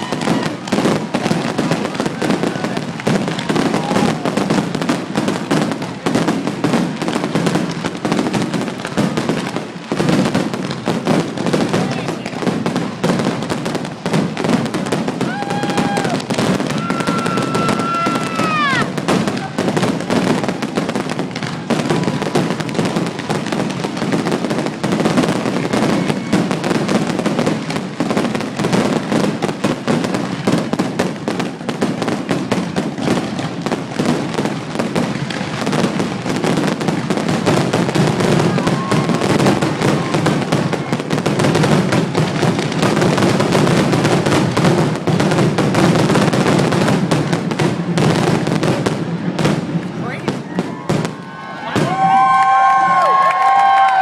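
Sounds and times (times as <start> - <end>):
firework whistling: 0.0 - 48.5
fireworks bangs and crackling: 0.0 - 54.0.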